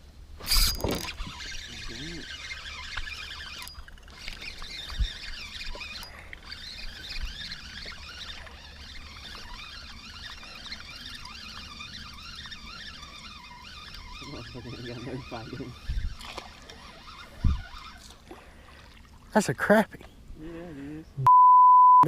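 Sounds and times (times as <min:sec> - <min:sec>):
wind rumble on microphone: 0:15.7 - 0:16.2, 0:17.4 - 0:17.7.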